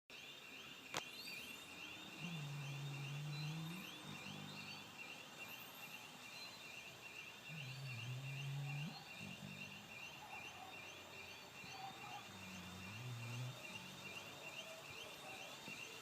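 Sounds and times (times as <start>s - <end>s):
high chirping: 0.4s - 16.0s
dog snoring: 2.1s - 4.9s, 7.5s - 10.8s, 11.6s - 15.8s.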